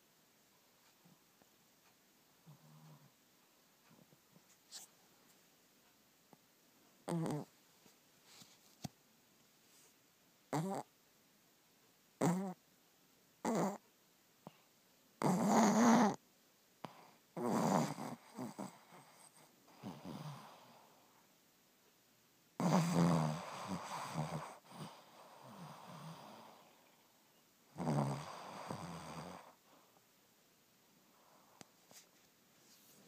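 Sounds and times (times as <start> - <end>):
loud snoring: 7.1 - 7.5, 10.5 - 10.9, 12.2 - 12.6, 13.4 - 13.8, 15.2 - 16.2, 16.9 - 20.9, 22.6 - 26.8, 27.7 - 29.6
soft breath: 23.4 - 27.0, 31.0 - 33.0.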